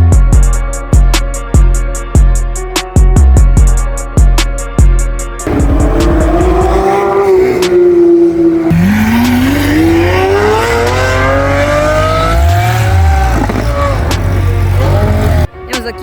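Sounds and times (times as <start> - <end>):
sports car engine accelerating: 5.4 - 15.5.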